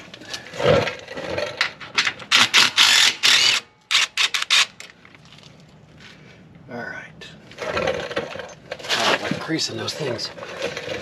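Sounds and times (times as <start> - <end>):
ratchet wrench clicking: 2.3 - 4.7.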